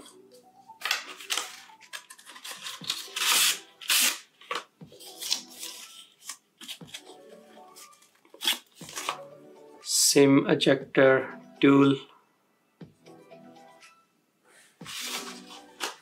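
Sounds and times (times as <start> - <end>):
quiet background music: 0.0 - 16.0
cardboard packaging rustling: 0.8 - 9.2, 14.8 - 16.0.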